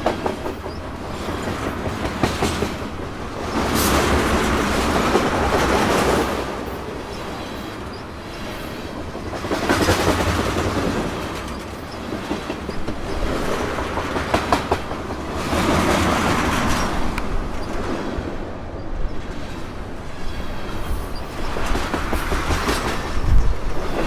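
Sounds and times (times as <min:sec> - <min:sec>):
freight train rumbling and rattling: 0:00.0 - 0:24.0
wheels clacking over rail joints: 0:00.0 - 0:24.0.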